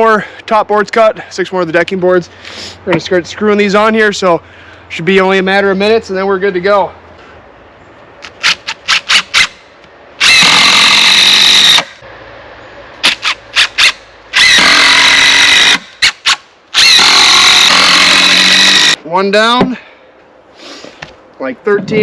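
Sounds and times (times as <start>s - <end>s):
power driver whirring: 14.4s - 15.8s, 16.8s - 19.0s.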